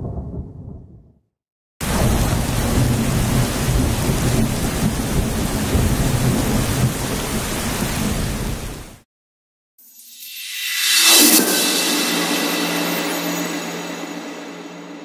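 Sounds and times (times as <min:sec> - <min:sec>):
thunder rumbling: 0:00.0 - 0:01.2, 0:01.8 - 0:09.0
heavy rain: 0:01.8 - 0:09.0.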